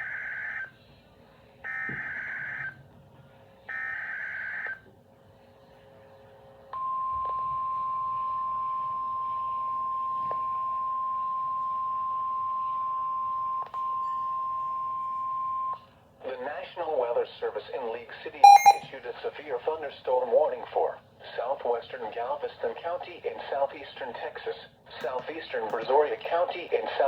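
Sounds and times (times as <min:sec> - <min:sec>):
steady single-pitched alert tone: 0:18.4 - 0:18.8.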